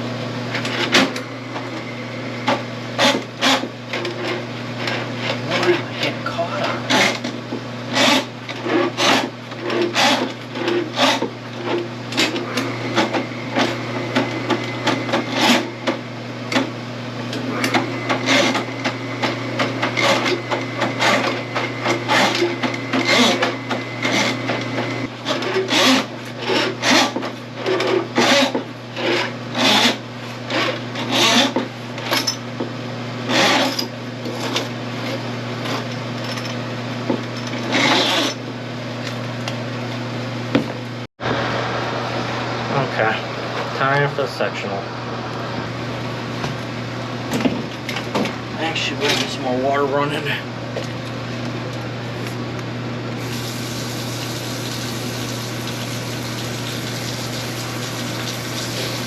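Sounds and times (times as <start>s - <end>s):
drain auger motor hum: 0.4s - 16.6s, 17.2s - 31.6s, 53.1s - 59.0s.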